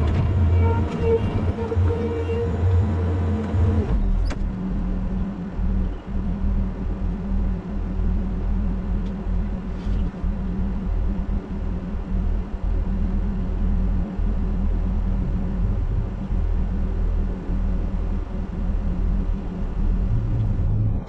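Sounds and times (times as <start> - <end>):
heavy equipment engine running: 0.0 - 21.0.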